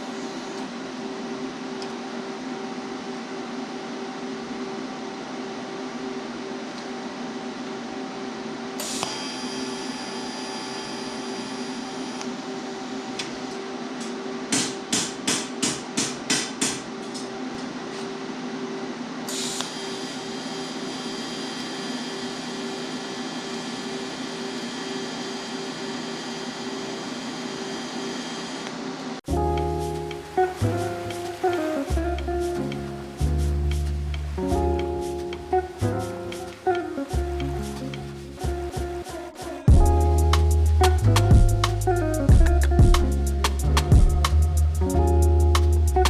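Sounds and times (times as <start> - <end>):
hammer blows on sheet metal: 14.5 - 17.0
high whine: 16.9 - 46.0.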